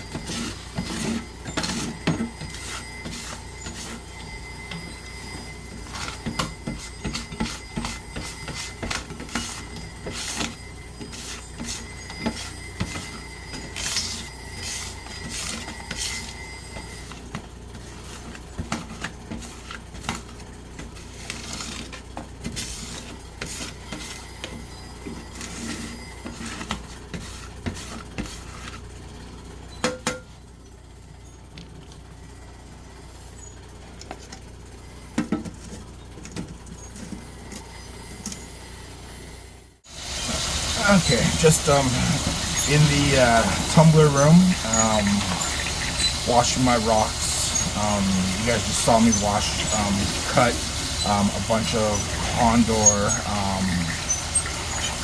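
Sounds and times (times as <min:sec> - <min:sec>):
scraper scraping and clattering: 0:00.0 - 0:04.1, 0:05.8 - 0:29.1, 0:40.3 - 0:55.0.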